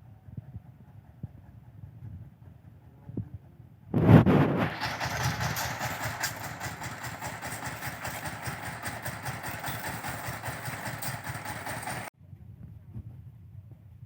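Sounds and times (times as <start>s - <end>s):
engine running with pulsing beat: 4.6s - 12.1s
light rattling: 4.7s - 12.1s.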